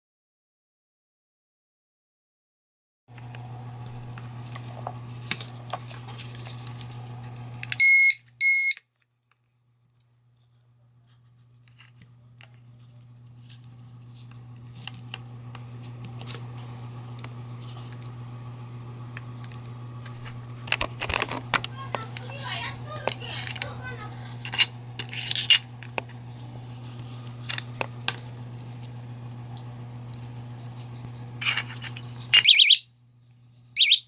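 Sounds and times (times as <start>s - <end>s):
high-pitched alarm beeps: 7.8s - 8.8s, 32.4s - 32.8s, 33.8s - 34.0s.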